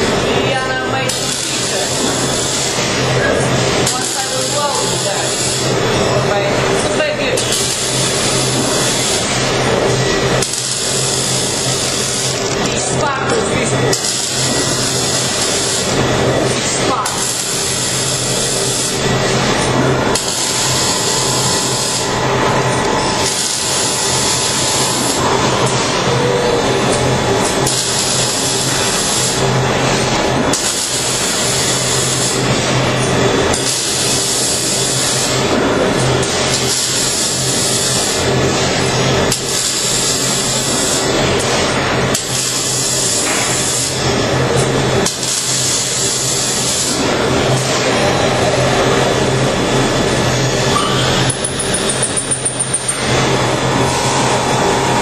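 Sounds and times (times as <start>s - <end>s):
welding arc crackling: 1.1s - 5.9s, 7.4s - 38.5s, 39.1s - 47.0s, 51.2s - 55.0s
low buzz: 14.0s - 33.4s, 52.3s - 55.0s
low hum: 17.4s - 30.5s, 52.5s - 55.0s.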